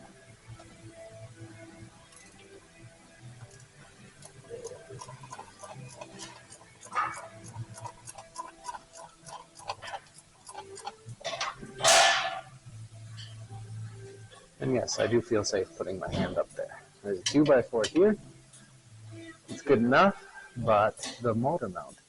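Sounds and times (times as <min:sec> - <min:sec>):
hand ratchet clicking: 0:03.4 - 0:11.6.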